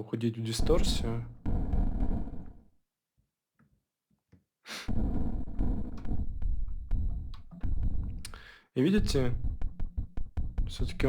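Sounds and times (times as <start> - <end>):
synthesized distorted filtered noise: 4.9 - 8.3, 9.0 - 11.0.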